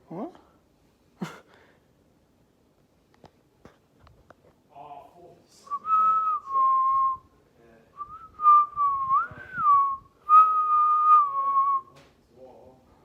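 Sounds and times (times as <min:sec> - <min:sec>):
person whistling: 0:05.7 - 0:07.2, 0:08.0 - 0:11.9.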